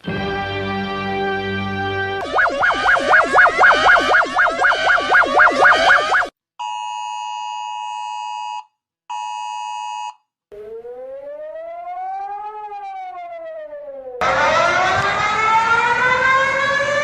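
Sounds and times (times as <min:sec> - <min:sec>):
siren rising and falling in pitch: 0:02.2 - 0:06.3, 0:10.5 - 0:17.0
two-tone alarm: 0:02.2 - 0:07.1.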